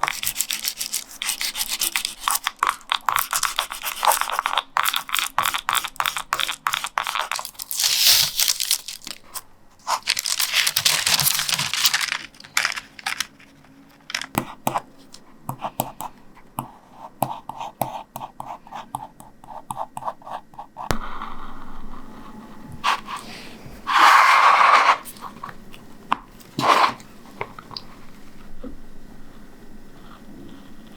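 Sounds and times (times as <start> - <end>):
paper tearing and rustling: 7.4 - 14.3.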